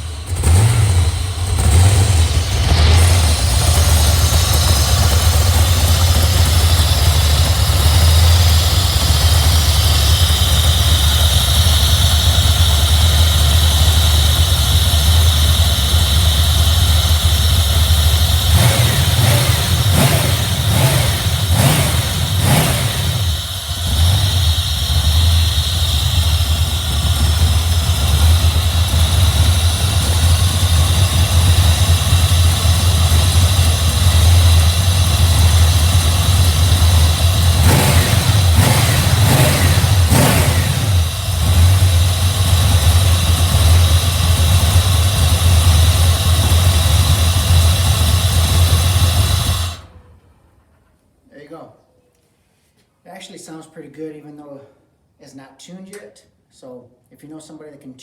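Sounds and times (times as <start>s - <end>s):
steady high whine: 0.0s - 45.5s
car engine idling and revving: 0.0s - 50.3s.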